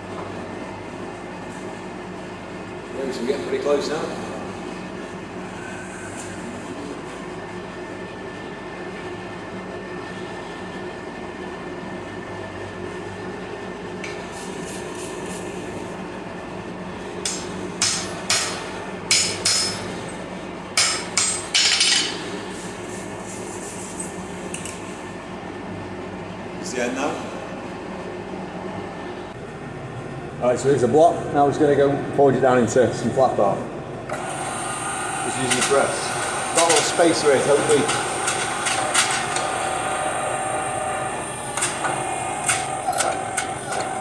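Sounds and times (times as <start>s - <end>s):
forge humming: 0.0s - 44.0s
hammer striking steel on anvil: 17.3s - 19.9s, 20.8s - 22.2s.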